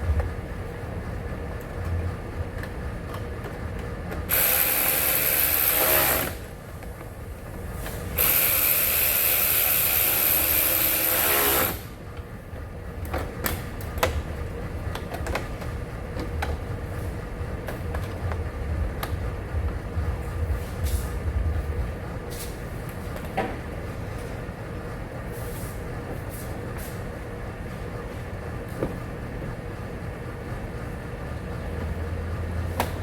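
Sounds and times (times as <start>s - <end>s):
power tool driving fasteners: 4.3s - 6.5s, 8.1s - 11.9s.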